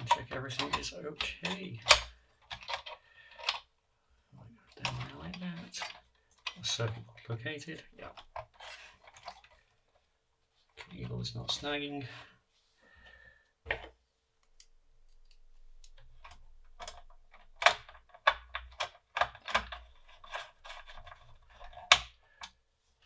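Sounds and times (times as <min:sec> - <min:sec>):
clicks and knocks of metal parts: 0:00.0 - 0:03.7, 0:04.7 - 0:07.1, 0:15.8 - 0:22.6.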